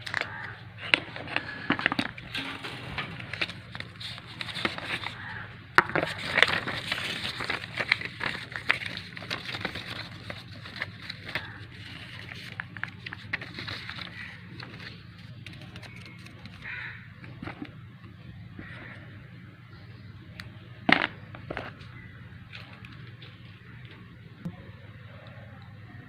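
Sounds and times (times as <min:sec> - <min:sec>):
packaging clicks taps and rustling: 0:00.0 - 0:02.3, 0:03.3 - 0:16.7
steady low hum: 0:00.0 - 0:26.0.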